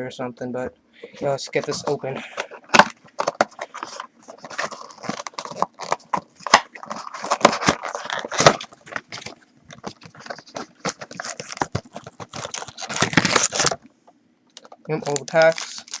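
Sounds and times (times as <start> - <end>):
cardboard box scraping and tearing: 1.2 - 9.4.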